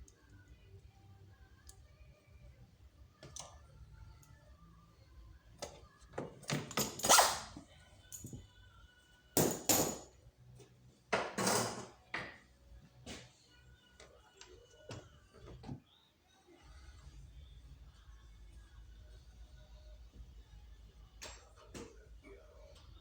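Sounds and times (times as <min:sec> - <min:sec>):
metal tools clinking and clanking: 0:06.4 - 0:08.4, 0:09.4 - 0:10.2, 0:11.3 - 0:12.0.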